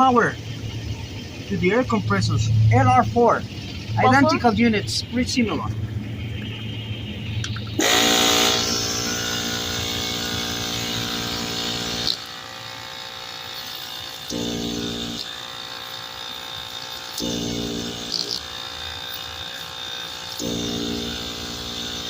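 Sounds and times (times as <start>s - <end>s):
air compressor motor humming: 7.5s - 22.0s.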